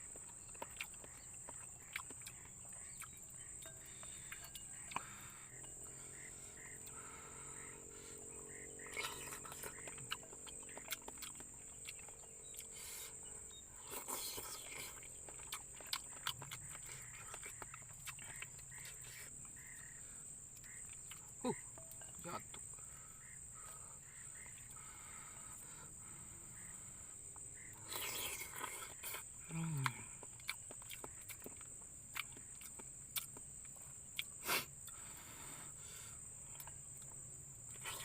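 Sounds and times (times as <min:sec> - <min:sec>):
faint animal calls: 0:00.8 - 0:14.9, 0:15.6 - 0:30.2
high-pitched insect drone: 0:02.7 - 0:15.1.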